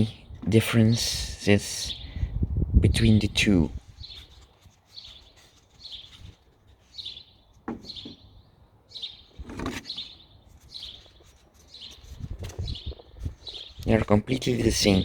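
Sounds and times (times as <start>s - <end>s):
bird chirping: 3.8s - 15.0s
handling knock or rustle: 7.6s - 8.2s.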